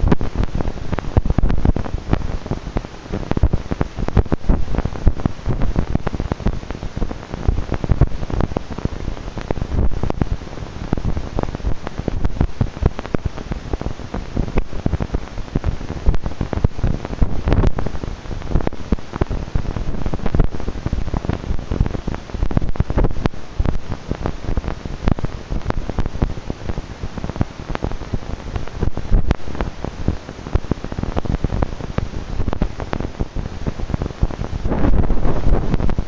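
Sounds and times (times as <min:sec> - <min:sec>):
crackles and knocks: 0:00.0 - 0:36.0
wind buffeting microphone: 0:31.6 - 0:36.0.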